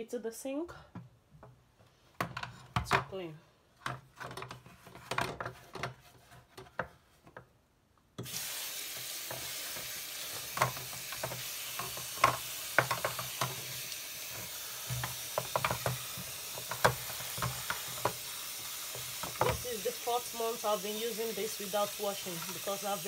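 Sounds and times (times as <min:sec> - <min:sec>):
water running into sink: 0:08.2 - 0:23.0.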